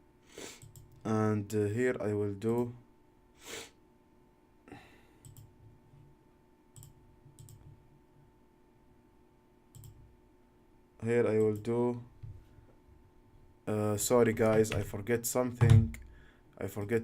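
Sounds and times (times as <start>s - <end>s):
computer mouse clicks: 0.6s - 1.0s, 5.2s - 5.5s, 6.8s - 7.8s, 9.7s - 10.0s.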